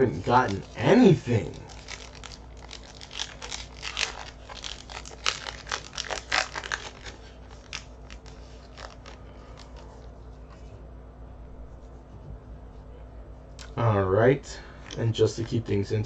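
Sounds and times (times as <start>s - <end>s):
foil wrapper crinkling and tearing: 0.0s - 10.0s.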